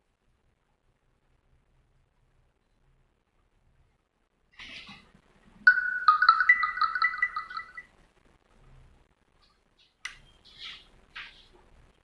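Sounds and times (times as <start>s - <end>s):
electronic alert melody: 5.7s - 7.9s.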